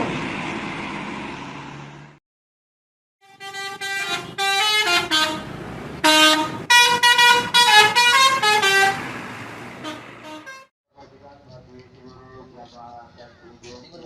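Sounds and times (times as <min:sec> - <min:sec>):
bus musical horn tune: 0:03.2 - 0:09.1, 0:09.8 - 0:10.7.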